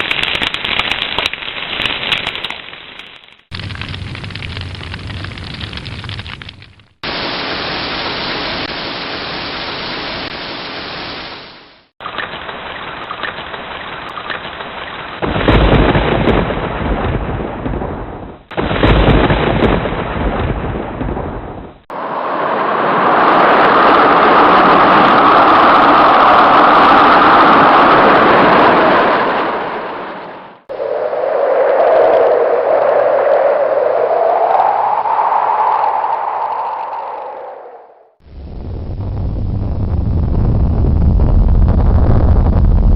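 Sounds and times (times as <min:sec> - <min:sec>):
steady rain: 0:00.0 - 0:20.4
rushing downpour: 0:00.0 - 0:30.8, 0:31.7 - 0:42.9
thunder rolls: 0:03.5 - 0:07.0, 0:15.2 - 0:42.9.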